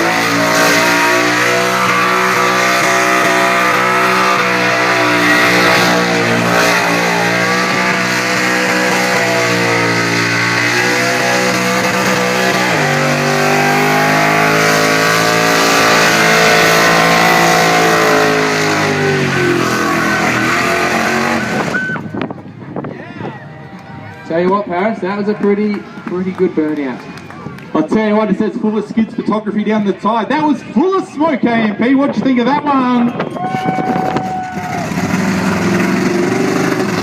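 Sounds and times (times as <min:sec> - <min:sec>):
car engine at high revs: 0:00.0 - 0:22.3, 0:34.0 - 0:37.0.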